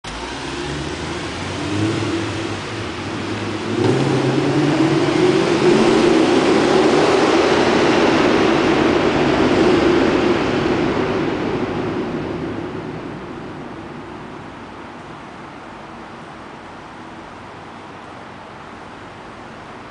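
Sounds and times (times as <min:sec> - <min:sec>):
car engine revving: 0:00.0 - 0:14.6.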